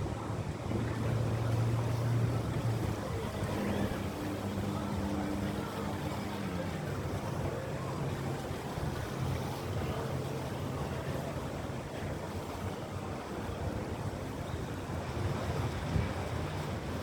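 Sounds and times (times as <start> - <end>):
motorboat engine idling: 0.0 - 17.0
water: 0.0 - 17.0
wind noise on microphone: 13.0 - 17.0.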